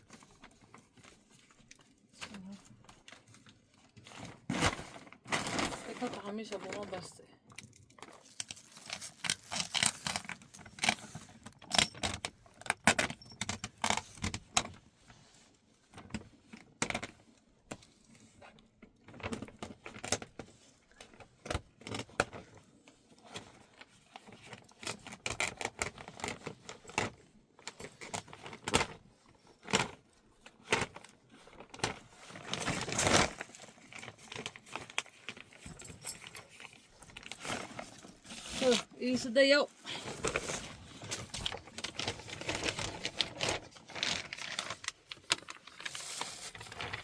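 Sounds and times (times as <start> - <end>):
objects clinking and clattering: 7.6 - 14.0, 25.9 - 30.1, 31.8 - 39.2.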